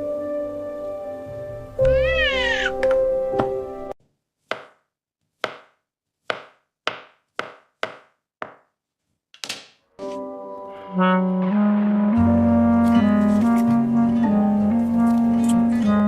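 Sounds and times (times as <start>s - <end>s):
sharp chopping strikes: 4.5s - 4.8s, 5.4s - 8.6s.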